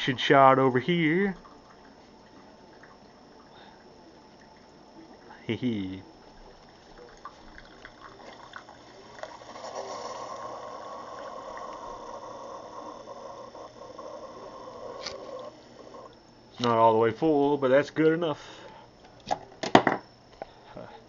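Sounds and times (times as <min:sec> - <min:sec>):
coffee pouring stream: 0:00.4 - 0:16.2
coffee dripping into a mug: 0:00.9 - 0:16.2.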